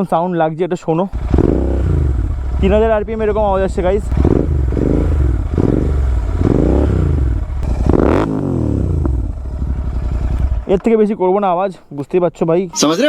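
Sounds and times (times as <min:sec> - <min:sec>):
motorcycle engine revving: 0:01.1 - 0:10.9.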